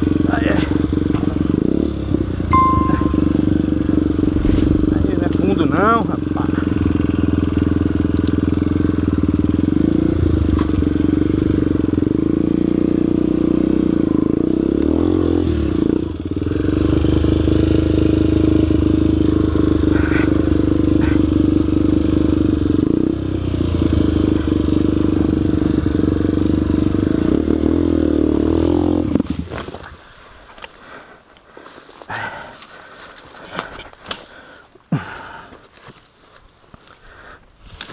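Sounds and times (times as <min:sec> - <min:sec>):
motorcycle engine running: 0:00.0 - 0:29.4.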